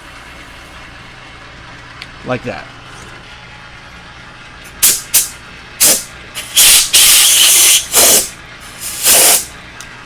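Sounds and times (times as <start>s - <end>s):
air blow gun hissing blasts: 4.8s - 9.5s.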